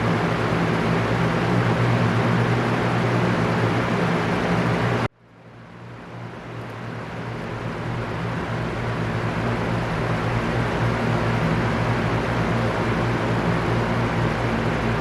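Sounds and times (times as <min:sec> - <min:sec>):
electric fan running: 0:00.0 - 0:15.0.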